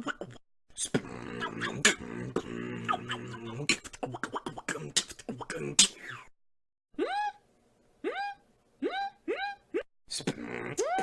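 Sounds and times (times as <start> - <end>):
beatboxing mouth clicks and hits: 0.8 - 6.1.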